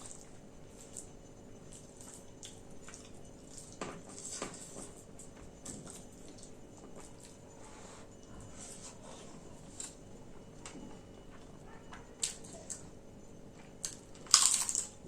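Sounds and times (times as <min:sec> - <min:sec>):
wet eating sounds: 0:00.0 - 0:07.4.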